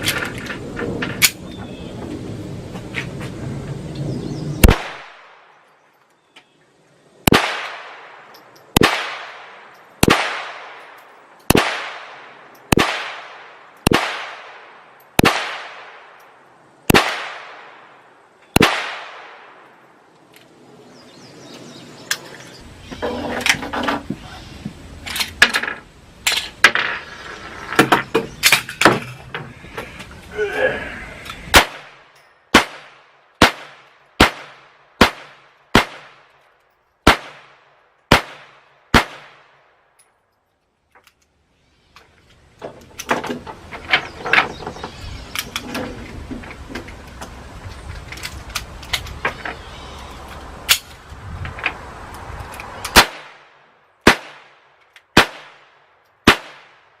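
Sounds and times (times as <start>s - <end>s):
clattering handling noise: 0.0s - 2.2s, 22.1s - 24.2s, 25.0s - 30.3s, 42.0s - 49.6s
pistol shots with echo: 4.6s - 5.4s, 7.3s - 10.8s, 11.5s - 16.2s, 16.9s - 17.9s, 18.6s - 19.6s, 31.5s - 36.2s, 37.0s - 39.5s, 54.0s - 54.6s, 55.2s - 56.8s.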